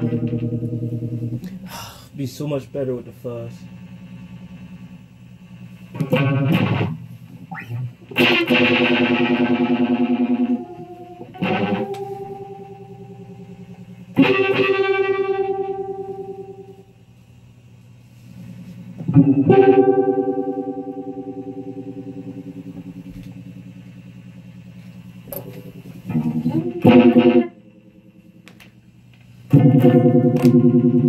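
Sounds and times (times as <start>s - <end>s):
electric guitar chords strummed: 0.0s - 1.7s, 3.0s - 17.0s, 18.4s - 31.0s
amplifier hum: 0.0s - 31.0s.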